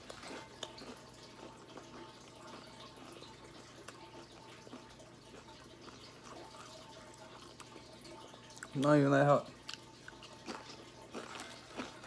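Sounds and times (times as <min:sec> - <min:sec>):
chewing crunchy chips: 0:00.0 - 0:12.0.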